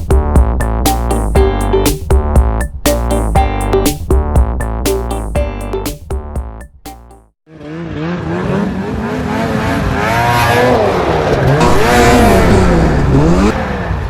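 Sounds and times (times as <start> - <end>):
snowmobile engine revving: 7.5 - 14.0.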